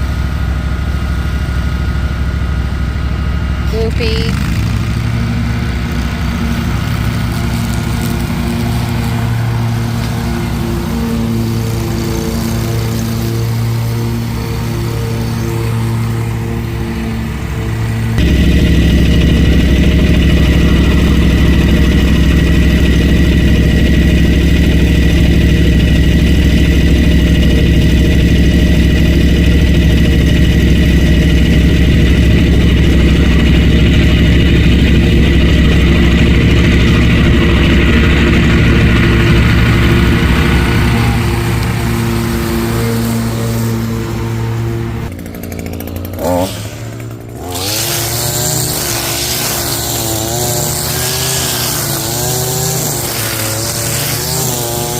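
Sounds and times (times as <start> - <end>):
engine running: 0.0 - 54.9.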